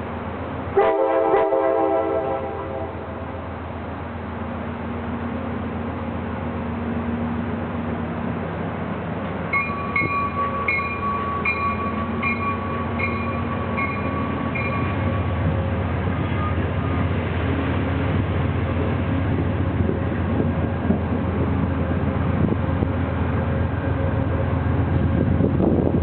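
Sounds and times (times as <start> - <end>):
diesel locomotive engine rumble: 0.0 - 26.0
train bell ringing: 9.5 - 15.5.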